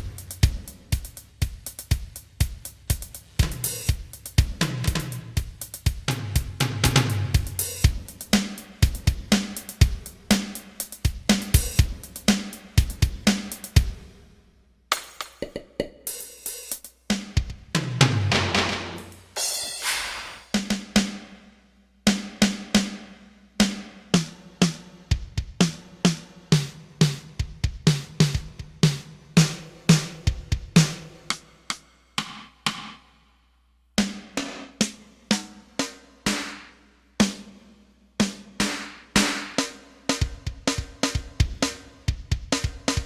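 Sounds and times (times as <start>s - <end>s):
deep bass drum: 0.0s - 10.2s
drum machine beat: 0.0s - 14.3s, 14.9s - 21.3s, 23.6s - 33.1s, 34.0s - 43.0s.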